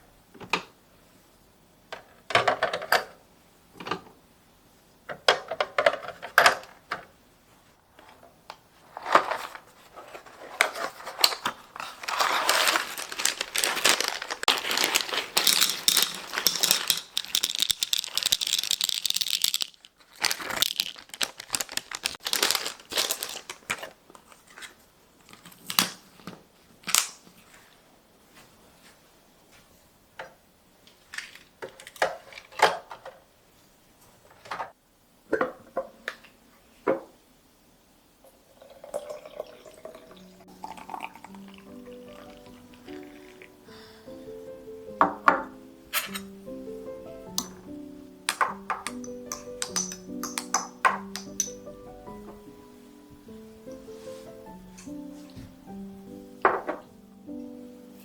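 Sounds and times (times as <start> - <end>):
plastic wrapping crinkling: 8.8 - 27.7, 47.2 - 51.7
small items clicking and knocking: 10.2 - 24.0, 47.2 - 51.7.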